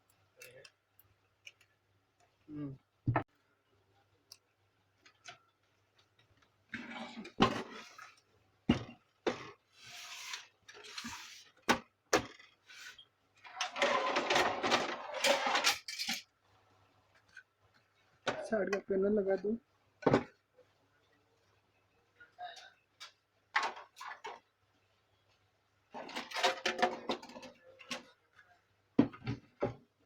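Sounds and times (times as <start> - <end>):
plastic parts clicking and knocking: 0.0 - 2.4, 22.9 - 24.5, 25.9 - 28.3
plastic scraping and rubbing: 6.7 - 8.2.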